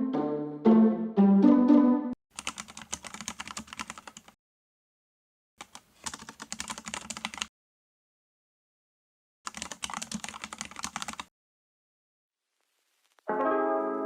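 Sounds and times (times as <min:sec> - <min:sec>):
rapid keyboard typing: 0:02.3 - 0:04.4, 0:05.6 - 0:07.5, 0:09.5 - 0:11.3.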